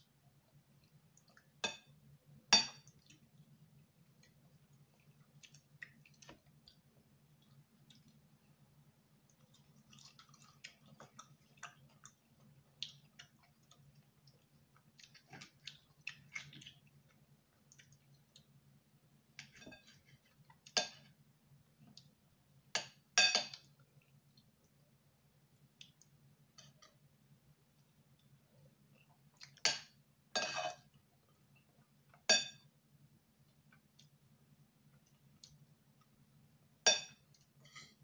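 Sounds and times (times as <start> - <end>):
close chewing and mouth clicks: 0.4 - 1.6, 2.8 - 8.6, 9.2 - 18.6, 25.6 - 27.0, 27.7 - 29.6.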